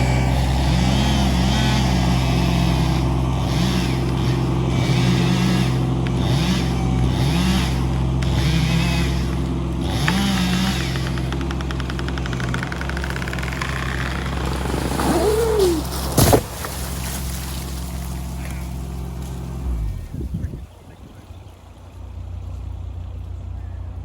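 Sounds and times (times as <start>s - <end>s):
engine revving: 0.0s - 20.6s
fine rapid ticking: 11.3s - 14.4s.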